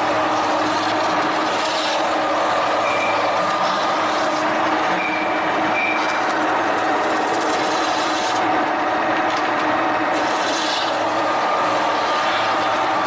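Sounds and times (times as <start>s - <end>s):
tool working against metal: 0.0s - 8.5s, 10.1s - 13.0s
metalworking machine running: 0.0s - 13.0s.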